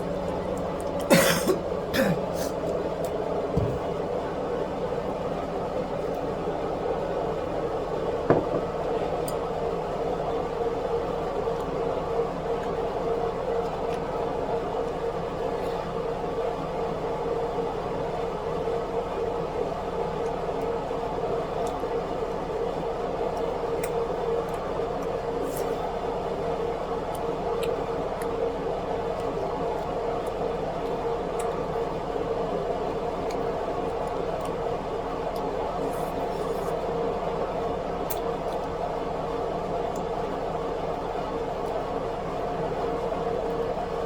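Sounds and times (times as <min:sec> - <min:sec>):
appliance humming: 0:00.0 - 0:44.0
faint eating clicks: 0:27.1 - 0:28.4, 0:37.9 - 0:38.8.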